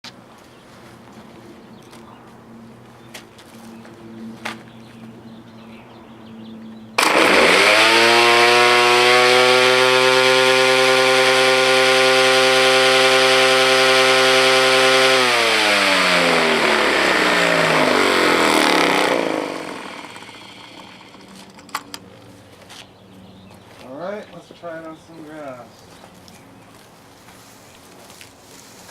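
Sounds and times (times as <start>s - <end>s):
blade winding down whoosh: 7.0s - 21.6s
electric string trimmer running: 7.0s - 22.0s.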